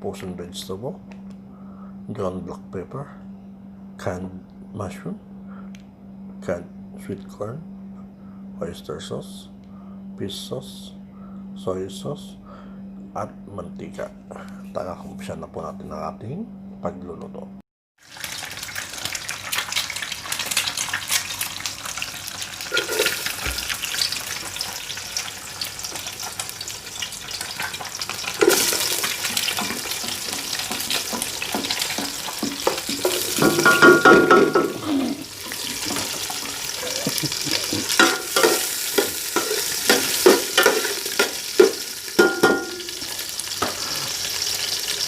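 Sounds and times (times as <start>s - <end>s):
food sizzling in hot oil: 18.0s - 45.0s.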